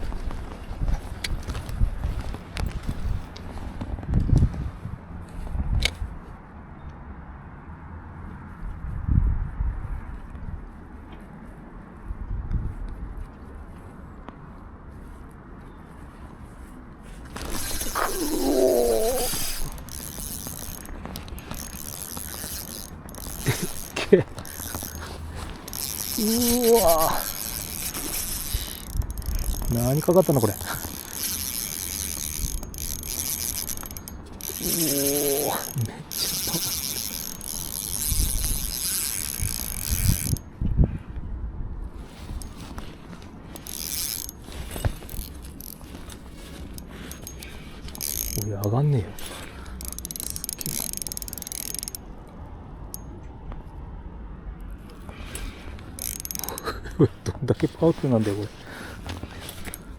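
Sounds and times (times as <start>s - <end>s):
fishing reel whirring: 17.3s - 40.4s, 42.3s - 52.0s, 55.3s - 56.8s, 59.0s - 59.9s.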